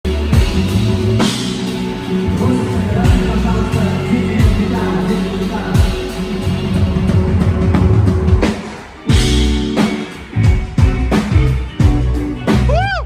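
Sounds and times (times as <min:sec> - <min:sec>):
person singing: 0:00.0 - 0:09.4
rock band playing: 0:00.0 - 0:13.0.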